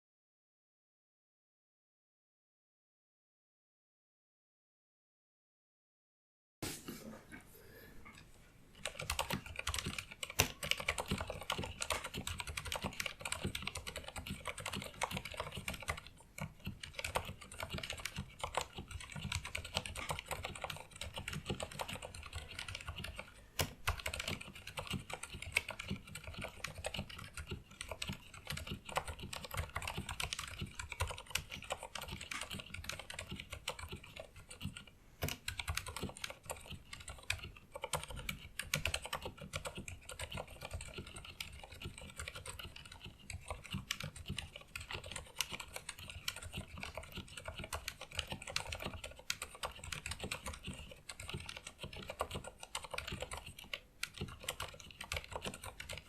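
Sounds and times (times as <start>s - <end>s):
fast mechanical keyboard typing: 8.8s - 56.0s.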